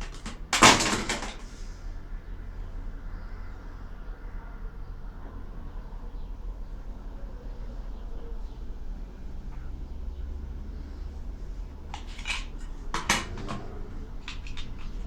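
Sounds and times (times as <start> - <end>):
hard objects clinking together: 0.0 - 1.5, 11.9 - 15.0.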